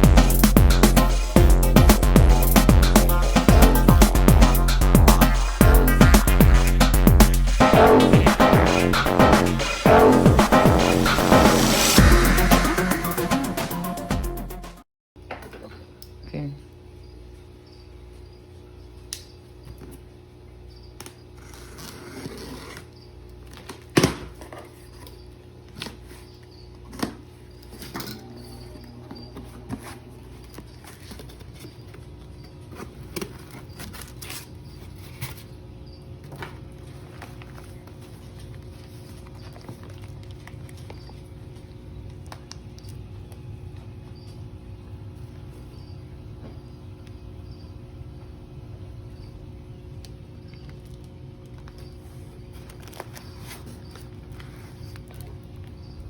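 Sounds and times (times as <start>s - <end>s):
box and packaging handled: 29.2s - 35.5s, 51.6s - 55.6s.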